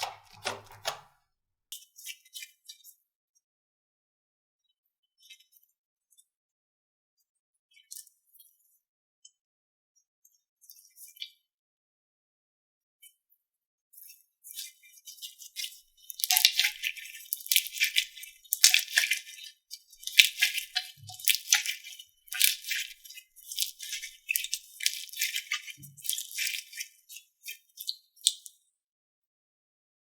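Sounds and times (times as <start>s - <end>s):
slime crackling and popping: 16.1s - 19.2s.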